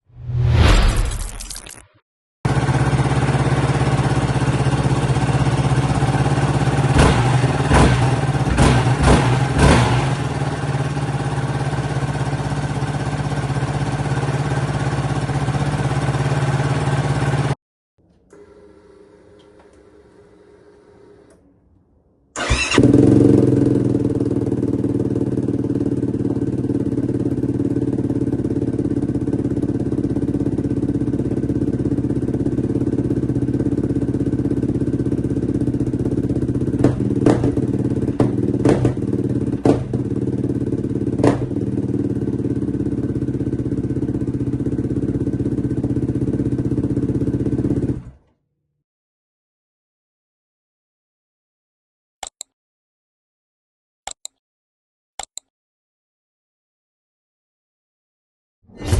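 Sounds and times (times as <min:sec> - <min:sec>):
quad engine idling: 0:02.5 - 0:17.6, 0:22.4 - 0:48.1.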